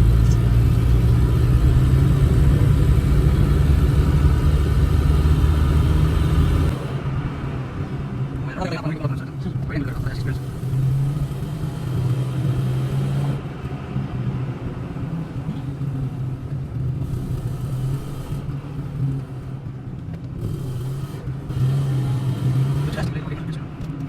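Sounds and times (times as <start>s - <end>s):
car engine drone: 0.0s - 24.0s
tyres rumbling on road: 0.0s - 24.0s.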